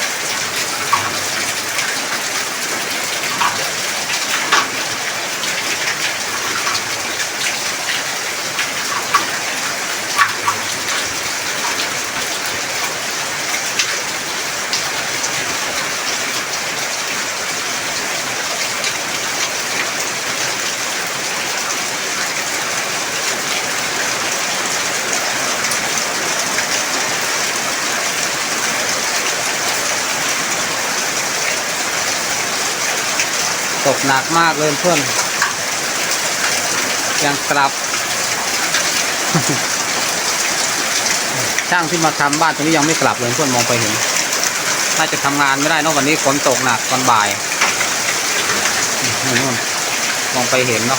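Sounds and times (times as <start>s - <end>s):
sharp raindrop strikes: 0.0s - 14.0s, 33.2s - 50.9s
heavy rain hissing: 32.1s - 50.9s.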